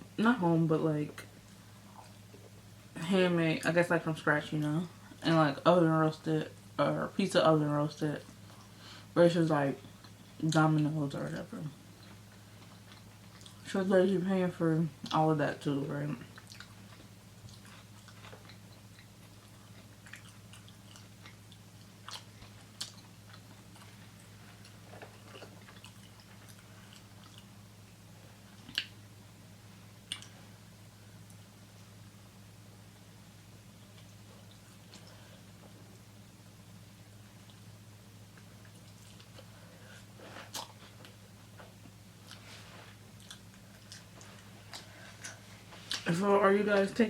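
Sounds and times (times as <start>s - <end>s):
faint low hum: 0.0s - 47.0s
wet chewing and smacking: 11.9s - 13.6s, 16.2s - 29.0s, 30.0s - 30.4s, 33.8s - 36.1s, 38.3s - 39.5s, 40.4s - 46.0s.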